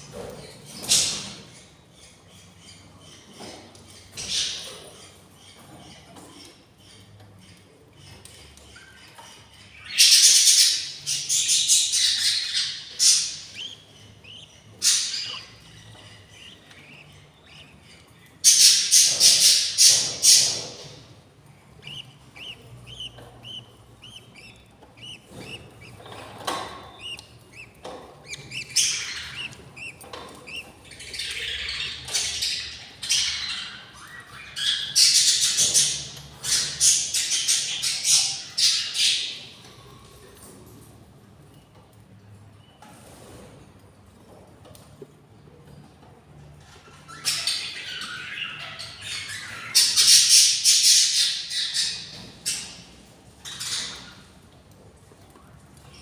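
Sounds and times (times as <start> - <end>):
chicks harsh begging calls: 9.9 - 33.9.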